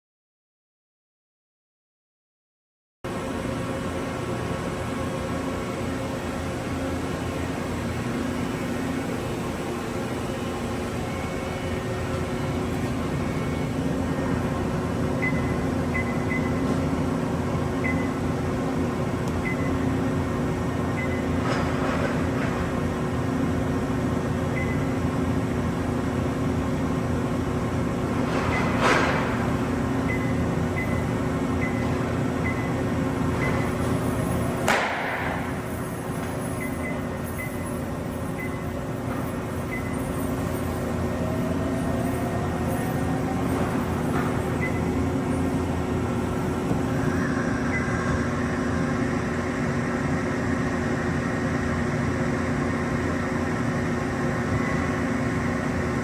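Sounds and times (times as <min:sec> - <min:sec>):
machinery hum: 0:03.1 - 0:56.0.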